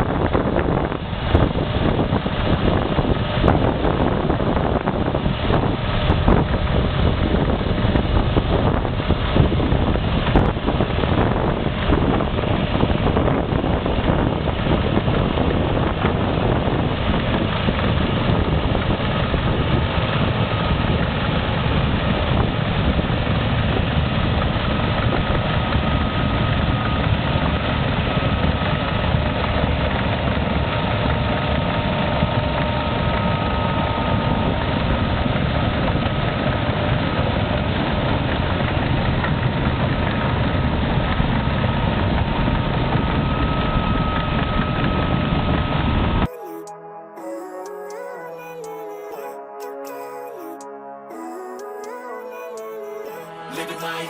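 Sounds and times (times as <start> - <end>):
heavy machine engine running: 0.0 - 46.3
thin steady whine: 30.4 - 35.4.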